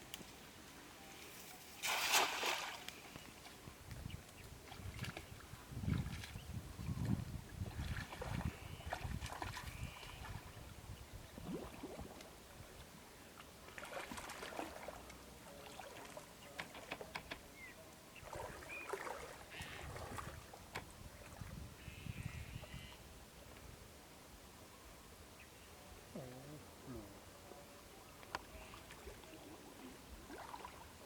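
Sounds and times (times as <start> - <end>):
shallow water splashing: 1.8 - 3.0, 11.4 - 12.2, 13.6 - 16.3, 18.2 - 20.6, 28.6 - 31.0.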